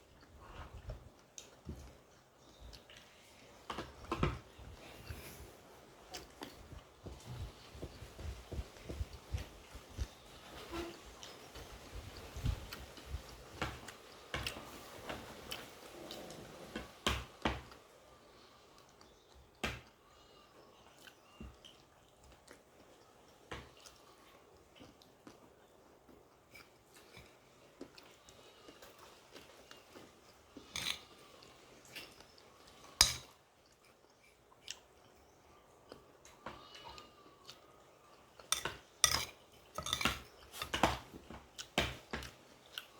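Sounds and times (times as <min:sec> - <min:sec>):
person chewing food: 0:00.0 - 0:42.9
cutlery clinking on plate: 0:38.5 - 0:41.0.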